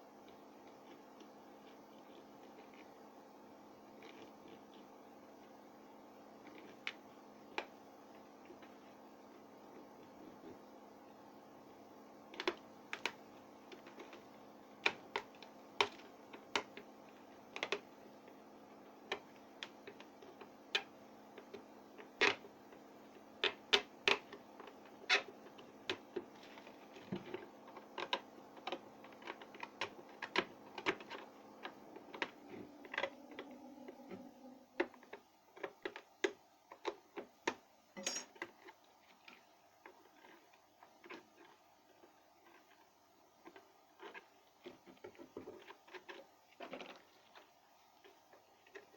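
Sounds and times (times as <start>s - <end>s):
steady hum: 0.0s - 35.8s
small tools clicking and tapping: 35.6s - 38.8s.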